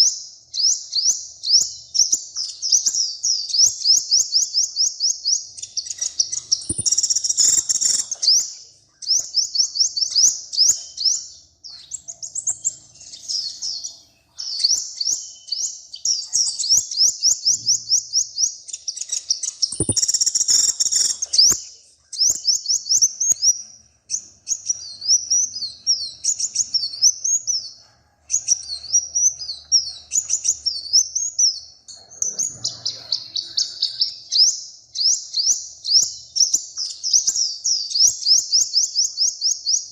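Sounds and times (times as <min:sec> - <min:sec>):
songbird trilling: 0:05.8 - 0:08.5, 0:09.1 - 0:21.6.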